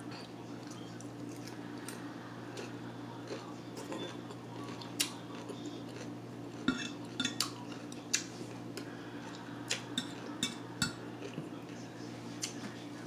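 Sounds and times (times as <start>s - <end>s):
low steady hum: 0.0s - 13.0s
cutlery clinking on a plate: 6.6s - 7.6s, 10.0s - 11.0s.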